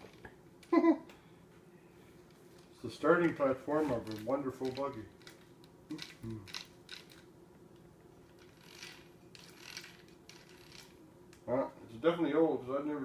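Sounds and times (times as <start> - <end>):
plastic parts clicking and rattling: 2.6 - 7.3, 8.3 - 11.0.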